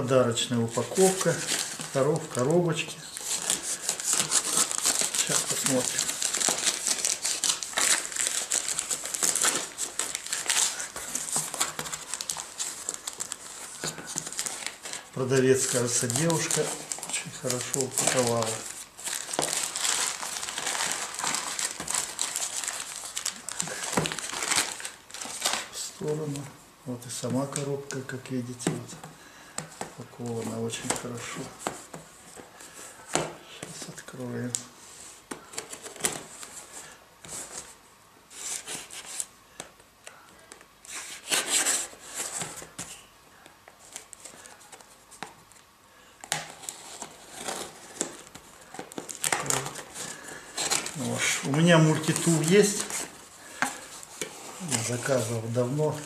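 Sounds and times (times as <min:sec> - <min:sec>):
packaging crinkling: 0:00.8 - 0:26.4, 0:46.2 - 0:56.0.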